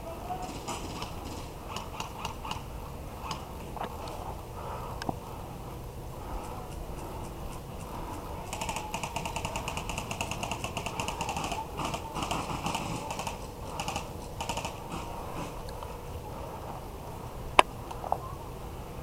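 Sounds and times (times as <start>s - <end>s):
airsoft gun firing full auto: 0.4s - 2.6s, 8.4s - 15.6s.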